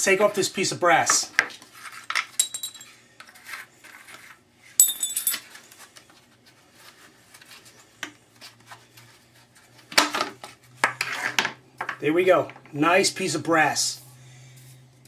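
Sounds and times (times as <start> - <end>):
metal tools clinking and scraping: 1.9 - 3.0, 4.8 - 5.6
sharp ringing metallic clink: 4.8 - 5.4.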